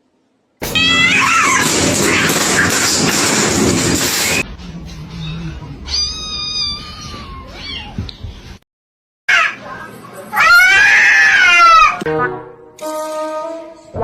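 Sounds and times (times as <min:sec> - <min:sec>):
cat meowing: 0:00.6 - 0:02.8, 0:05.0 - 0:08.1.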